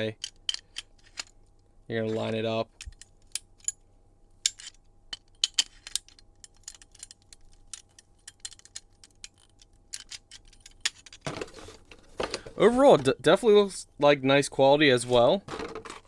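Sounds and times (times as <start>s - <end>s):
small clicks of lock hardware: 0.2s - 1.4s, 4.4s - 11.2s.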